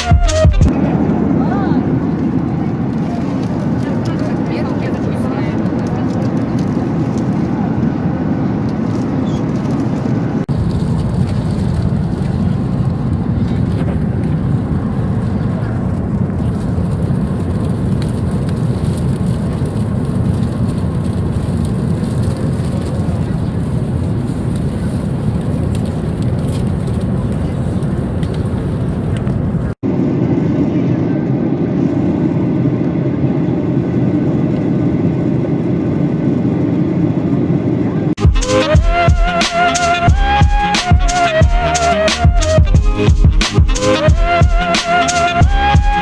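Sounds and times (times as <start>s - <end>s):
music: 0.0s - 0.7s, 38.2s - 46.0s
jet engine cabin noise: 0.0s - 46.0s.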